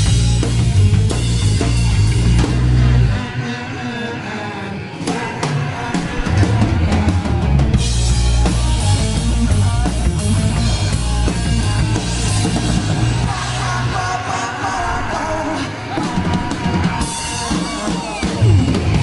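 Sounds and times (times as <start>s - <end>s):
live rock band playing: 0.0s - 19.0s
drum hits: 5.9s - 9.0s.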